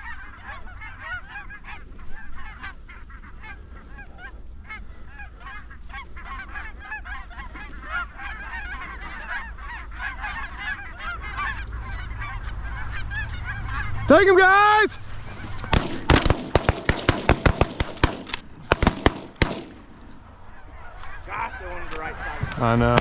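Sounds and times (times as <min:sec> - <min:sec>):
geese honking: 0:00.0 - 0:23.0
steady low rumble: 0:09.6 - 0:23.0.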